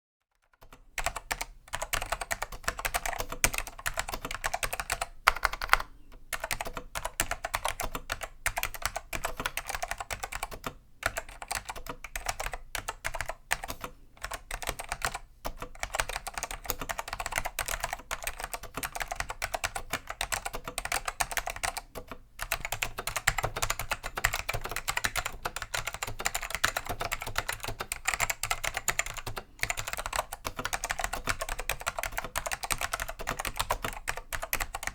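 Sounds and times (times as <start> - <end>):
fast keyboard typing: 0.4 - 34.9.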